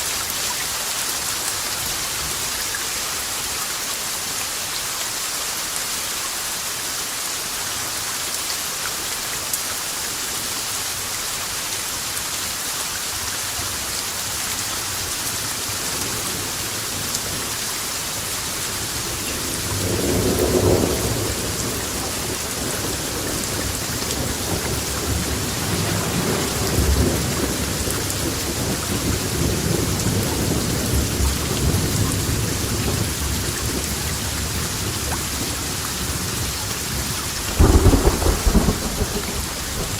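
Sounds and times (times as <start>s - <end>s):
steady rain hissing: 0.0s - 39.9s
thunder rumbling: 19.0s - 33.8s, 36.2s - 39.9s.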